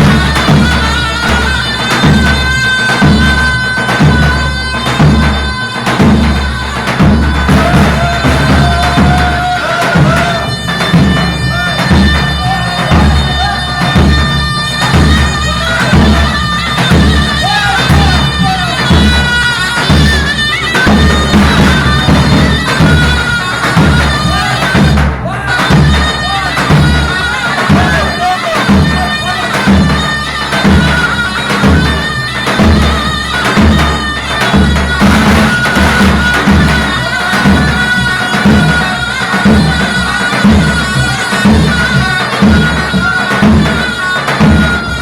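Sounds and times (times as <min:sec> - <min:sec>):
bass drum beat: 0:00.0 - 0:33.9
reedy wind melody: 0:00.0 - 0:45.0.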